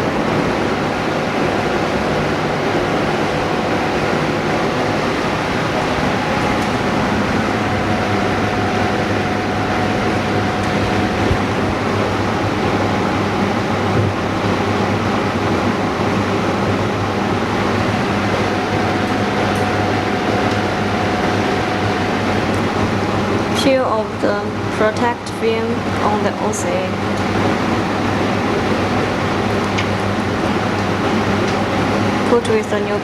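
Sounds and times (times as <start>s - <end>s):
machine hiss and hum: 0.0s - 33.0s.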